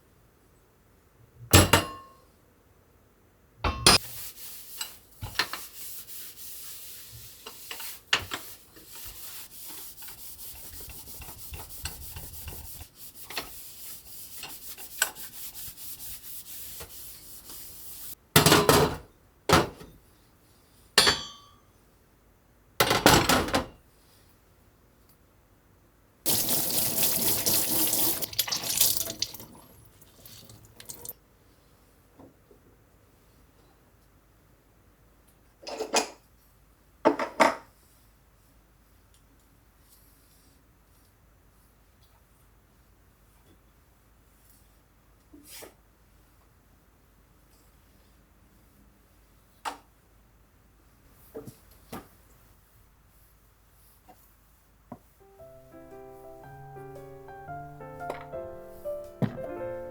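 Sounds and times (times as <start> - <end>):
tap water rushing: 26.3 - 31.1.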